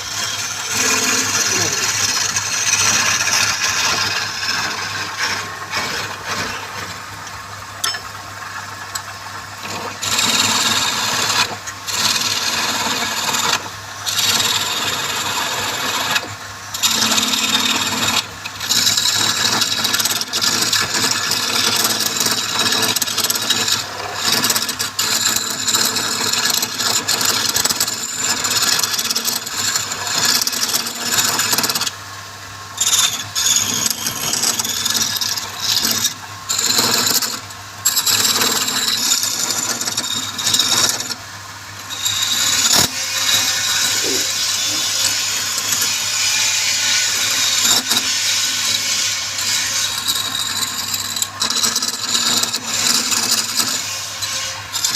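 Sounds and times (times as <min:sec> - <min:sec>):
lathe motor humming: 0:00.0 - 0:07.1, 0:32.8 - 0:41.2, 0:42.0 - 0:51.7
lathe tool scraping spinning wood: 0:00.0 - 0:07.3, 0:09.5 - 0:32.0, 0:32.8 - 0:41.2, 0:41.8 - 0:54.9.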